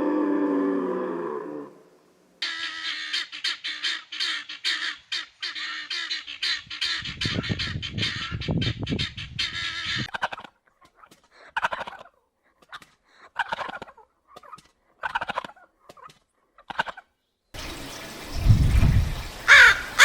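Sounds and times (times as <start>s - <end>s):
fowl calling: 2.4s - 10.1s, 19.5s - 20.0s.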